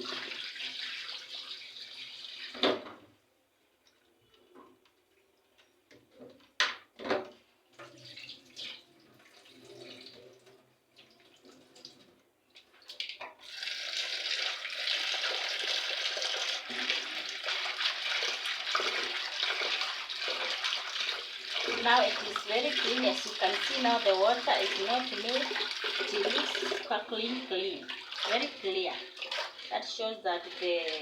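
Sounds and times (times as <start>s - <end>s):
water pouring into basin: 0.0s - 2.6s, 8.0s - 12.1s, 13.0s - 31.0s.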